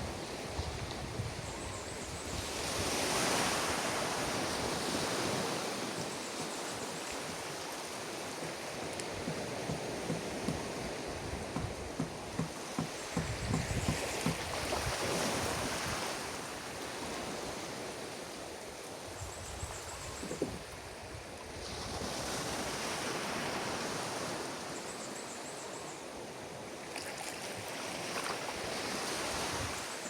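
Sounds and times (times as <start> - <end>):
ocean surf on beach: 0.0 - 19.2, 19.8 - 25.2, 26.1 - 30.0.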